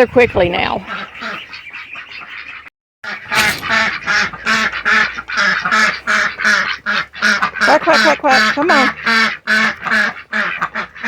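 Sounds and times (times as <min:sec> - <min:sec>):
ducks quacking: 0:03.4 - 0:11.0.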